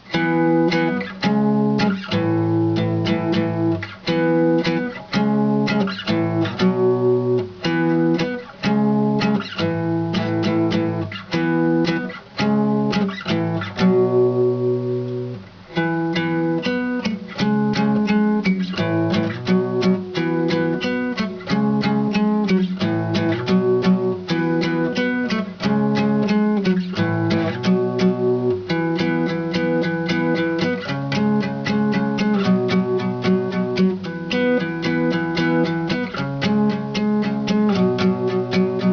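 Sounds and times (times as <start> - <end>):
acoustic guitar strumming: 0.0 - 38.9.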